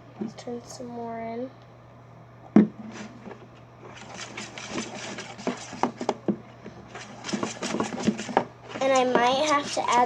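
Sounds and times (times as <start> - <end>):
spoon stirring slime in bowl: 3.9 - 6.2, 6.9 - 10.0.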